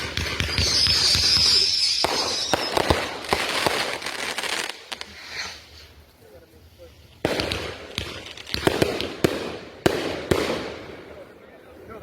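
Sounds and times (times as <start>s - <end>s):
fireworks bangs and crackling: 0.0s - 12.0s.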